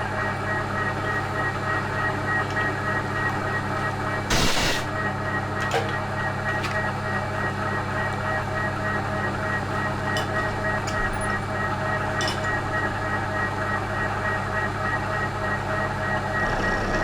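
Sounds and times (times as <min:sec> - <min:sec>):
milling machine humming: 0:00.0 - 0:17.0
loud burst of noise: 0:04.3 - 0:05.1.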